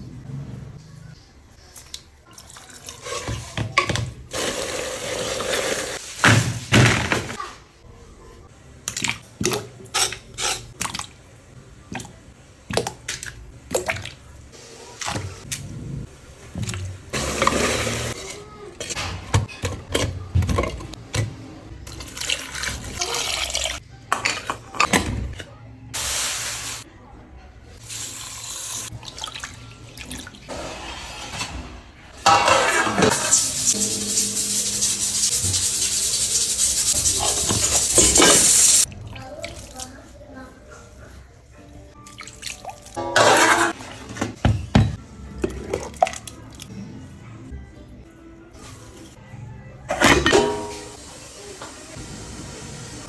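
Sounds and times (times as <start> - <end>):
dishes and utensils clinking: 16.6 - 22.0, 31.3 - 38.9, 42.9 - 46.2, 49.9 - 51.0.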